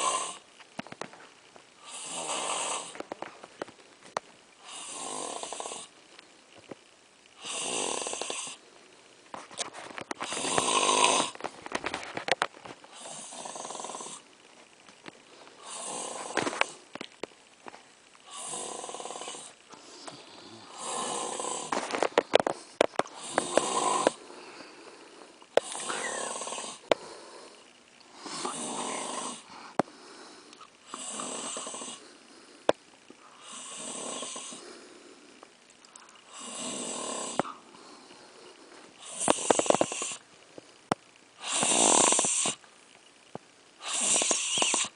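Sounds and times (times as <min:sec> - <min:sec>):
man snoring: 0:00.0 - 0:00.5, 0:01.8 - 0:03.0, 0:04.6 - 0:06.0, 0:07.4 - 0:08.6, 0:10.2 - 0:11.4, 0:12.9 - 0:14.2, 0:15.6 - 0:16.8, 0:18.3 - 0:22.5, 0:23.1 - 0:24.2, 0:25.6 - 0:27.6, 0:28.2 - 0:29.6, 0:30.8 - 0:32.0, 0:33.3 - 0:34.8, 0:36.3 - 0:37.6, 0:39.0 - 0:40.2, 0:41.4 - 0:42.6, 0:43.8 - 0:44.9.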